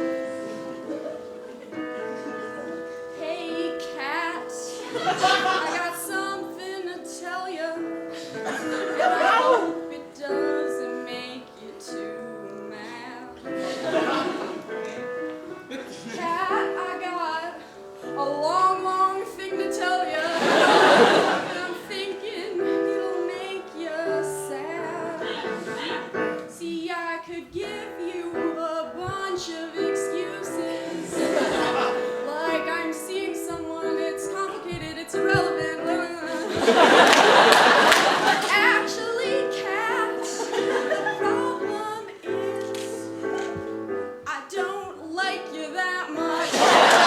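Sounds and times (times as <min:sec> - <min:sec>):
piano accompaniment: 0:00.0 - 0:47.0
audience laughter: 0:00.4 - 0:03.1, 0:04.7 - 0:05.9, 0:08.1 - 0:09.7, 0:13.6 - 0:16.7, 0:20.2 - 0:21.9, 0:25.2 - 0:26.4, 0:30.7 - 0:32.3, 0:36.3 - 0:38.8, 0:40.1 - 0:41.5, 0:46.3 - 0:47.0
woman singing comic song: 0:03.2 - 0:13.8, 0:16.0 - 0:36.8, 0:38.3 - 0:43.2, 0:44.3 - 0:47.0.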